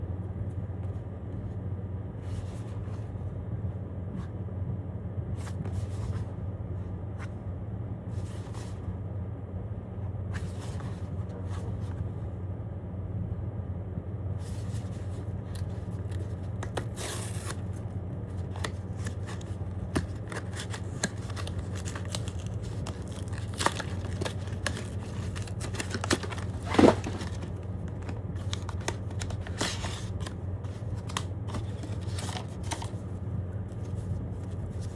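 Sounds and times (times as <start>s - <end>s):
steady low hum: 0.0s - 34.9s
packaging being torn and crinkled: 15.4s - 33.0s.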